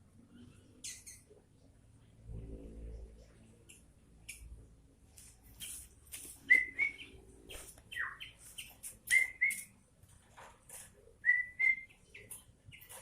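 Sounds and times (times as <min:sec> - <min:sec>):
bird chirping and whistling: 0:06.4 - 0:07.2, 0:07.9 - 0:09.7, 0:11.2 - 0:12.9.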